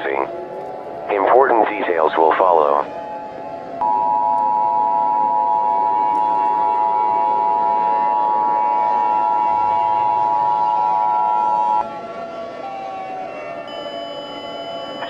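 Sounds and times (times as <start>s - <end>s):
civil defense siren: 0.0s - 15.0s
two-tone attention signal: 3.8s - 7.9s, 13.7s - 15.0s.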